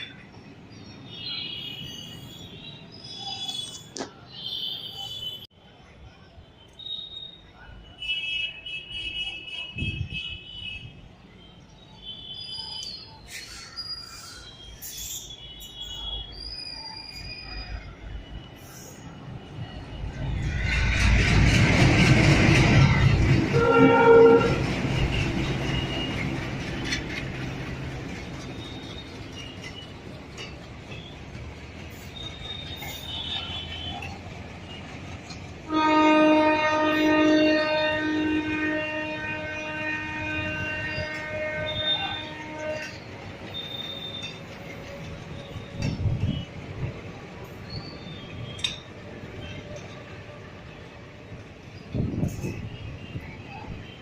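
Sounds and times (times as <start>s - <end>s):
train wheels squealing on rails: 0.0s - 10.4s, 11.1s - 35.7s, 40.0s - 54.0s
train horn: 23.5s - 26.1s, 35.6s - 44.2s.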